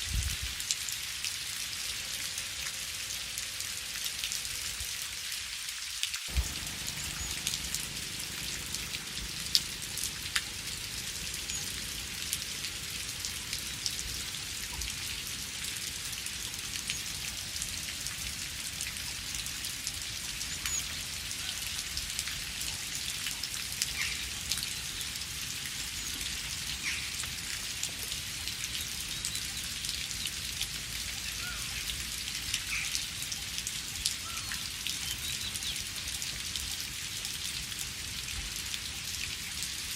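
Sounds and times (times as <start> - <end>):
rain falling in forest: 0.0 - 39.9
raindrops ticking: 6.3 - 19.5.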